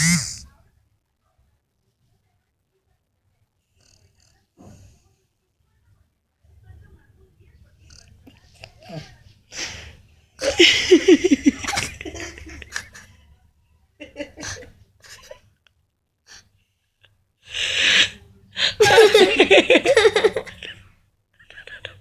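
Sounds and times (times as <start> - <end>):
breathy human laughter: 10.4 - 13.2, 14.0 - 15.4, 17.6 - 20.8, 21.4 - 22.0
sharp breath in: 17.5 - 18.8.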